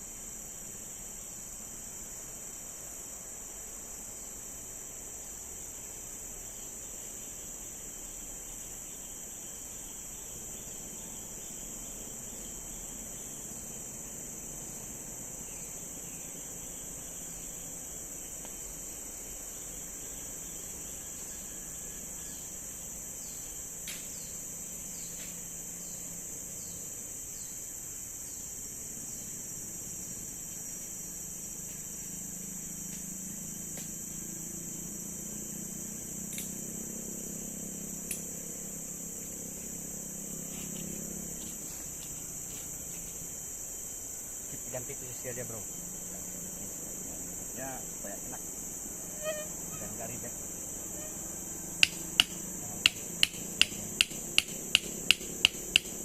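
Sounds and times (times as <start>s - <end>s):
crickets or cicadas droning: 0.0s - 56.0s
sharp click: 51.8s - 56.0s.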